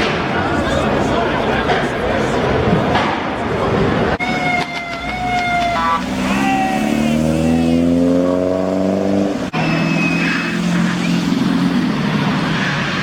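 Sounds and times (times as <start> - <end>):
car engine revving: 5.5 - 13.0.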